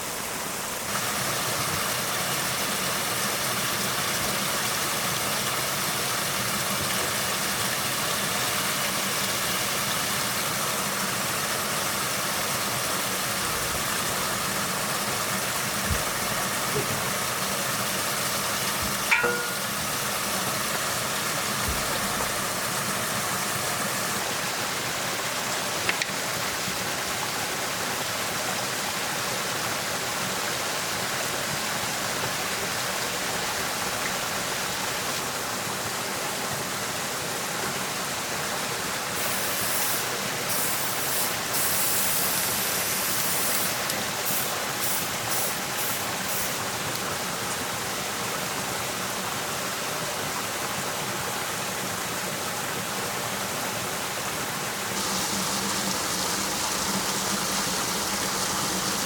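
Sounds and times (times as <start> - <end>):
flowing water rushing: 0.0 - 59.0
hissing surges: 55.0 - 59.0.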